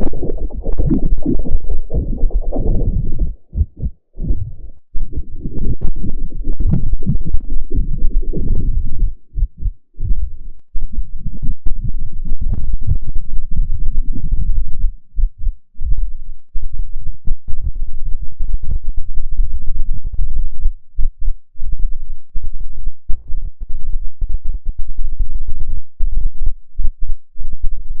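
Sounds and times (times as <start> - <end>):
distorted stuttering electronic audio: 0.0 - 3.9.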